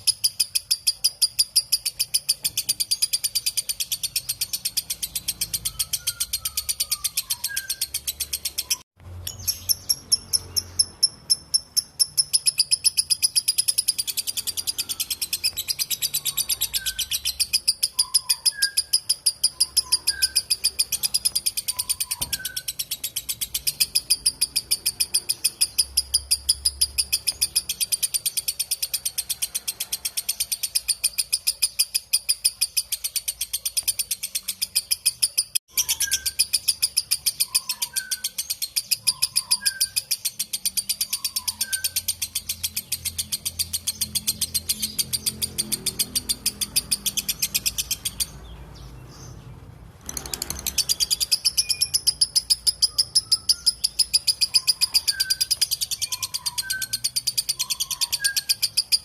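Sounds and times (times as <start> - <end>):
lovebird chattering trill: 0.0 - 48.6, 50.0 - 59.0
faint bird chirps: 0.0 - 59.0.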